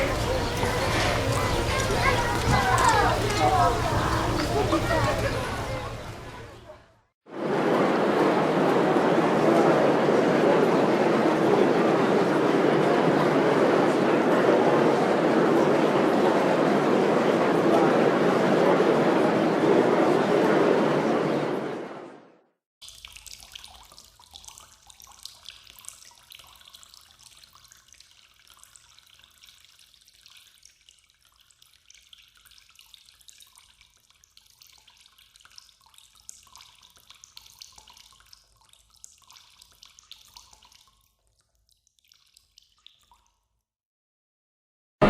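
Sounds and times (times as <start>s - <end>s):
water dripping in a cave: 0.0s - 5.8s, 22.8s - 43.7s.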